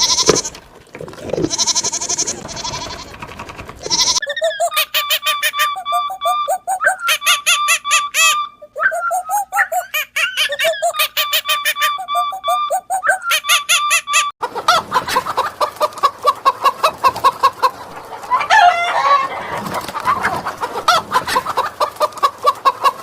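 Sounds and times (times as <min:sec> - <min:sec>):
birds calling: 0:00.0 - 0:14.7
rising and falling bird call: 0:03.9 - 0:14.3.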